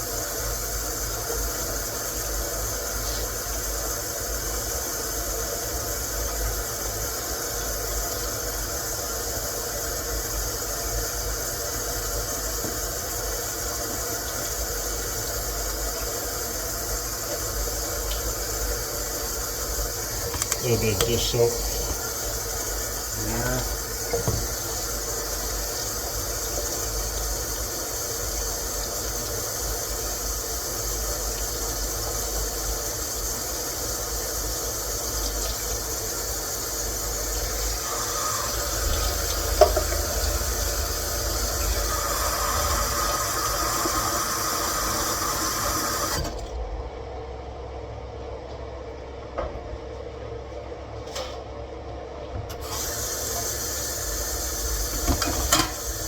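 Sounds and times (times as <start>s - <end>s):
tap running into sink: 12.1s - 14.7s, 19.9s - 27.4s, 37.1s - 46.5s, 54.4s - 56.0s.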